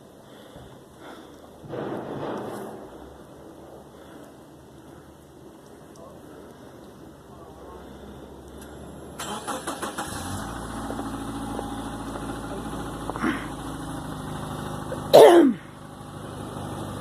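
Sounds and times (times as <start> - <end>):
car engine idling: 0.0 - 17.0
car starter cranking: 8.6 - 13.2.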